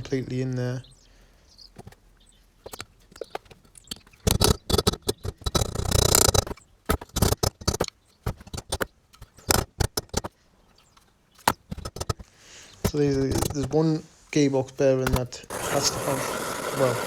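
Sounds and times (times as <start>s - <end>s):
sharp metallic clicks and knocks: 2.6s - 13.9s.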